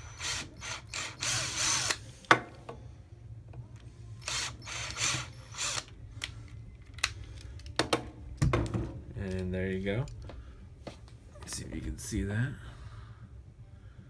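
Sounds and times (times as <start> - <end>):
power drill drilling metal: 0.0 - 2.0, 4.2 - 5.9.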